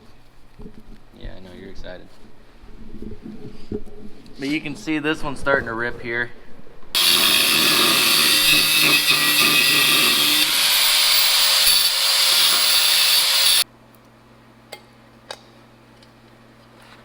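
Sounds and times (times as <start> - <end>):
power tool running: 7.0 - 13.6.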